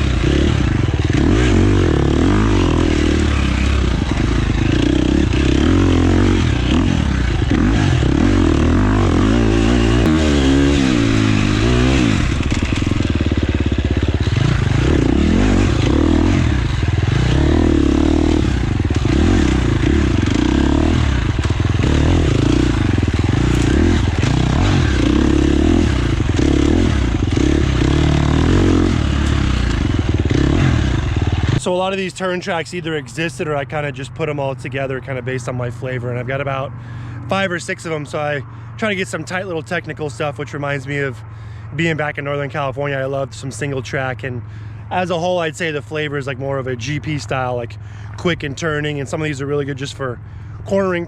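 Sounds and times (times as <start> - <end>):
dirt bike engine revving: 0.0 - 31.9.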